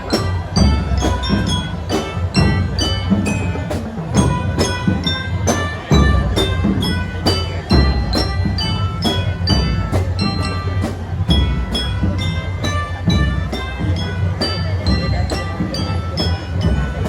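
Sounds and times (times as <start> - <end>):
high struck notes: 0.0 - 17.0
marching band playing: 0.0 - 17.0
steady drumming: 0.0 - 17.0.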